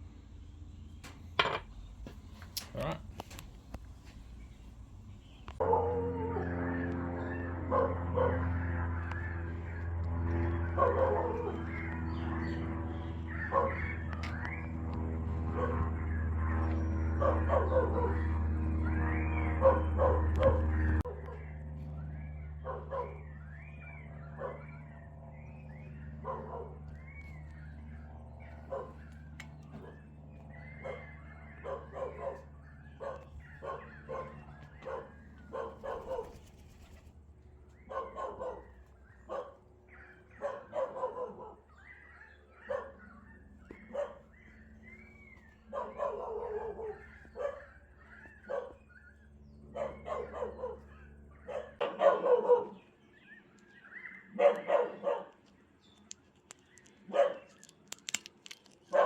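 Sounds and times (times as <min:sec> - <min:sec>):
low steady hum: 0:00.0 - 0:51.5
dog barking: 0:05.6 - 0:06.5, 0:07.6 - 0:08.6, 0:10.6 - 0:11.6, 0:13.4 - 0:13.9, 0:15.5 - 0:15.9, 0:17.0 - 0:18.4, 0:19.6 - 0:21.5, 0:22.6 - 0:23.3, 0:24.3 - 0:24.7, 0:26.2 - 0:26.8, 0:28.6 - 0:29.0, 0:30.7 - 0:36.5, 0:37.8 - 0:44.5, 0:45.7 - 0:52.9, 0:54.3 - 0:55.4, 0:57.1 - 0:57.5.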